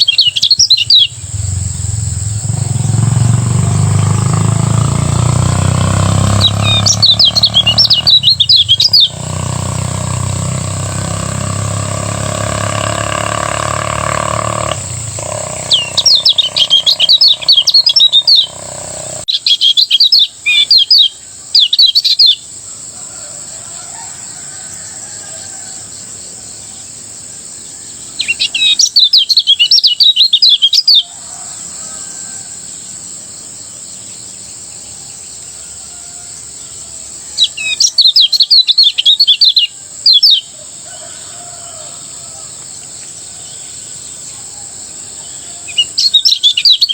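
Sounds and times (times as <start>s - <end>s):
white-eye bird twittering song: 0.0s - 22.9s, 24.0s - 35.6s, 36.2s - 46.9s.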